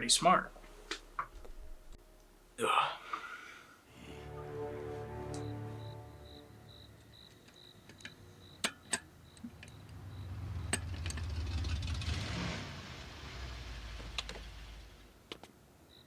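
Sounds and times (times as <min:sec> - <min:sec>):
crickets chirping: 0:04.3 - 0:11.8
vehicle engine driving past: 0:09.7 - 0:15.1.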